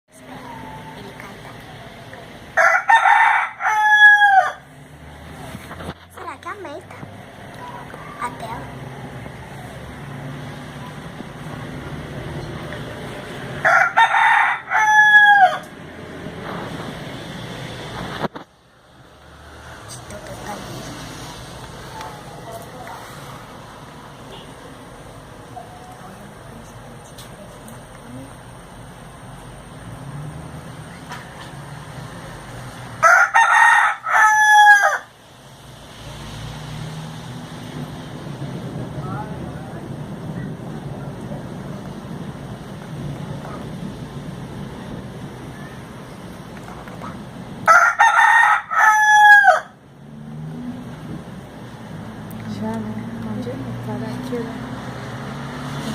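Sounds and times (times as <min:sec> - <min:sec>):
rooster crowing: 0:02.6 - 0:04.7, 0:13.6 - 0:15.7, 0:33.0 - 0:35.2, 0:47.6 - 0:49.8.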